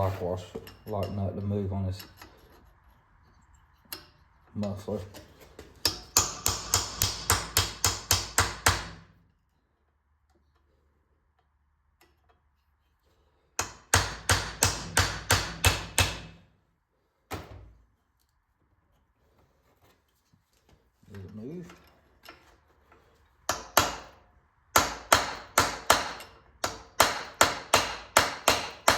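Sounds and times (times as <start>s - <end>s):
hammer striking metal: 5.8s - 8.9s, 13.6s - 16.3s, 24.8s - 28.9s.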